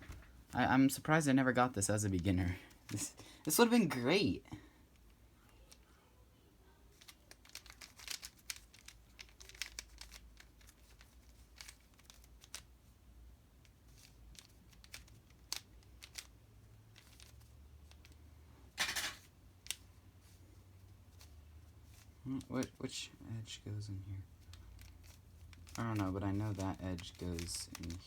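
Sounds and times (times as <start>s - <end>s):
puzzle cube clicking: 6.9s - 12.7s, 14.0s - 16.3s, 24.5s - 28.0s.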